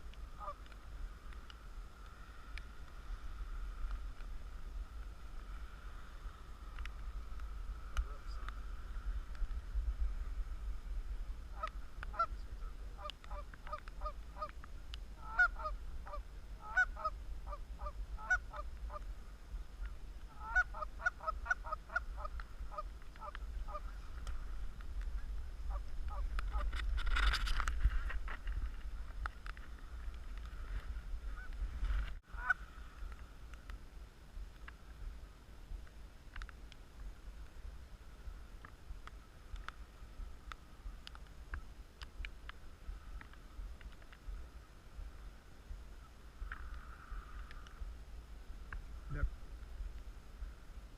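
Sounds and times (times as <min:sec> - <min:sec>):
low wind rumble: 0:00.0 - 0:50.9
geese honking: 0:00.4 - 0:00.7, 0:11.5 - 0:12.3, 0:15.2 - 0:19.0, 0:20.3 - 0:23.9, 0:32.3 - 0:32.6.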